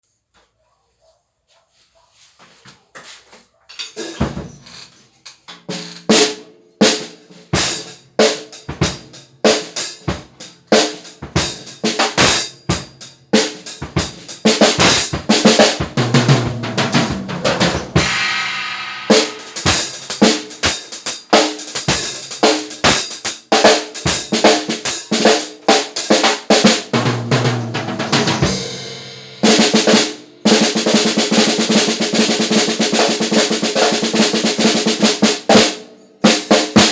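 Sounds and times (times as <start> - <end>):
snare drum strokes and rolls: 13.4 - 36.9.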